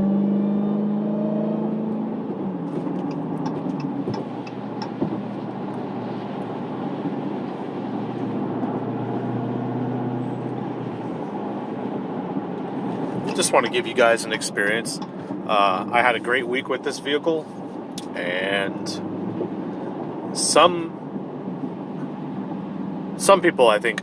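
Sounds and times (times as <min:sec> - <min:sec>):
car engine revving and cruising: 0:00.0 - 0:24.0
tyre noise on wet road: 0:02.2 - 0:24.0.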